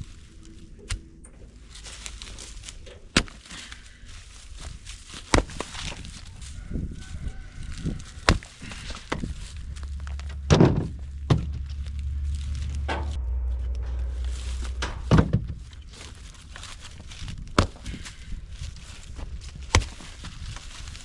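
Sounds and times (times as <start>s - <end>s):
low rumble: 0.0s - 3.2s, 6.0s - 21.0s.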